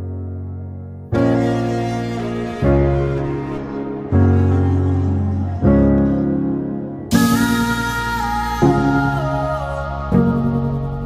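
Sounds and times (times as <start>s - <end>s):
slow sustained chords music: 0.0s - 11.0s.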